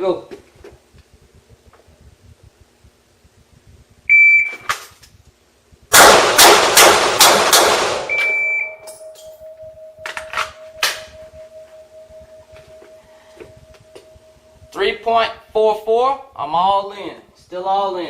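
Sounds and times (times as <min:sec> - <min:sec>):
shot timer beep: 0:04.1 - 0:04.7, 0:08.1 - 0:11.9
pistol shots: 0:05.9 - 0:08.2
faint steady tone: 0:08.1 - 0:17.4.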